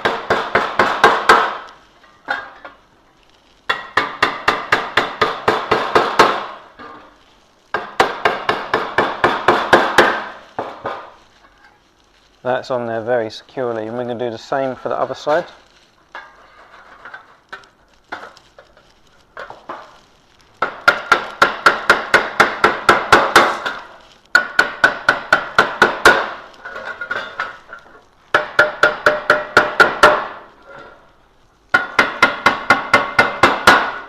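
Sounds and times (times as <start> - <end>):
hammer tapping on metal: 20.6 - 26.4, 28.3 - 30.4, 31.7 - 34.0.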